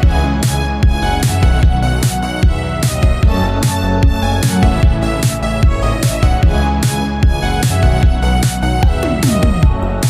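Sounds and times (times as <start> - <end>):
electronic dance music: 8.4 - 10.0.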